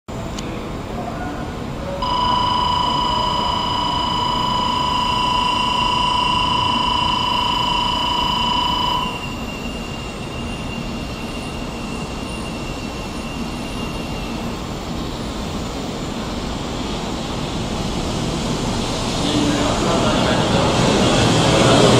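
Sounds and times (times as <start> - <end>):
train running with steady rumble: 0.1 - 21.9
long steady high tone: 2.0 - 13.6
faint high whine: 2.0 - 14.4.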